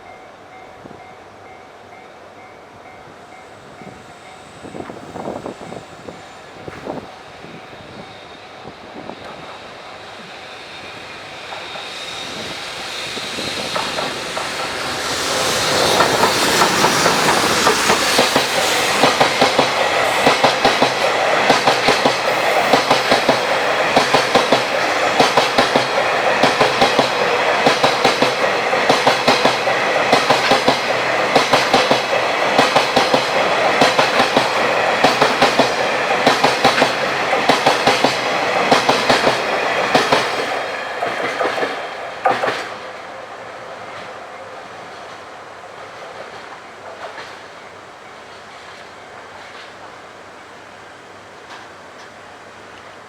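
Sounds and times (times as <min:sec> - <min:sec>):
train passing: 0:00.0 - 0:53.0
wheels clacking over rail joints: 0:11.4 - 0:43.0.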